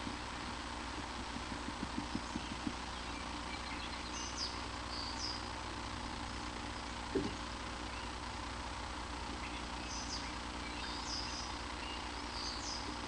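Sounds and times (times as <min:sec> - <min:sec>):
bird feet tapping on ledge: 0:01.3 - 0:02.8
thin high bird calls: 0:01.9 - 0:05.6, 0:06.3 - 0:08.2, 0:09.3 - 0:13.0
low thump: 0:07.1 - 0:07.4.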